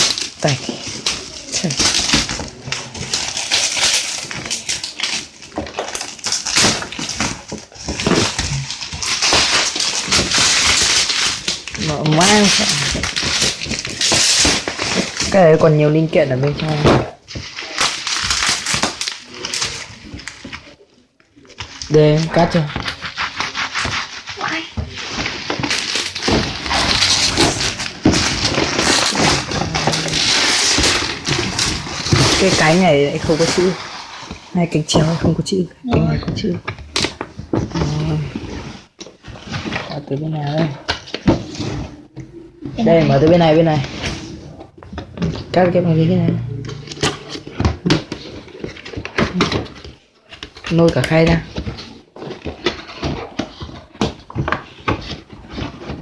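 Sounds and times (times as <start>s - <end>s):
packaging rustling and crinkling: 0.0s - 45.7s, 46.4s - 56.0s
cardboard box being torn open: 22.5s - 34.2s.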